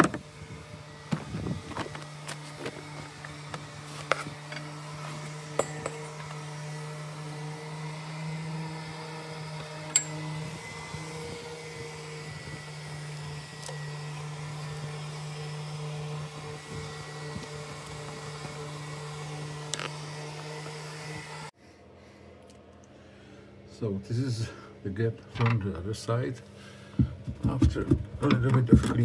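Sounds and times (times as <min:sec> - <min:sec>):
electric motor humming: 0:00.0 - 0:21.6.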